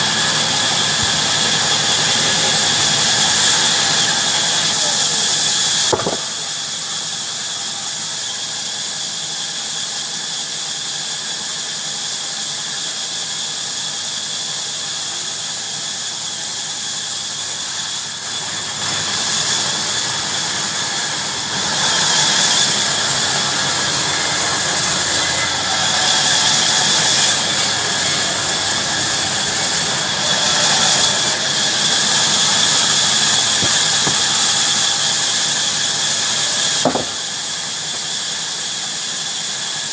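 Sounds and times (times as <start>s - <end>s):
bandsaw sawing through wood: 0.0s - 10.0s, 13.0s - 39.9s.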